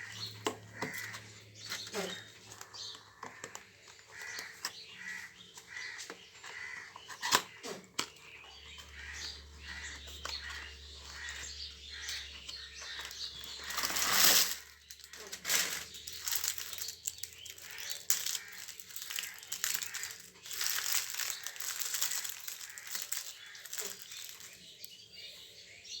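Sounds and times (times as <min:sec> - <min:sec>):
wrapper crinkling: 0:09.8 - 0:24.9.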